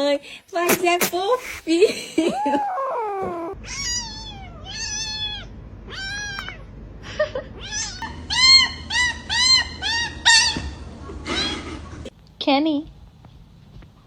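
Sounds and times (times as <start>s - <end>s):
kitten meowing: 2.5s - 6.7s, 7.6s - 10.7s.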